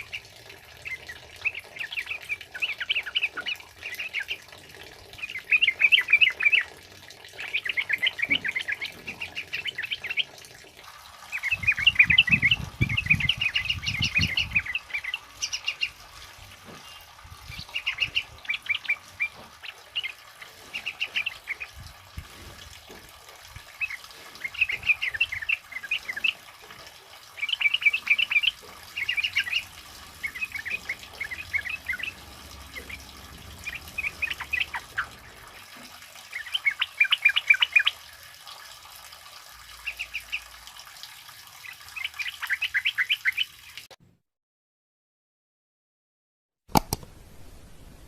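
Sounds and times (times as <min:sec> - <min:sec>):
birds chattering song: 0:00.0 - 0:04.5, 0:05.1 - 0:06.7, 0:07.3 - 0:10.4, 0:11.3 - 0:16.1, 0:16.7 - 0:21.8, 0:23.7 - 0:26.4, 0:27.4 - 0:35.2, 0:36.3 - 0:38.0.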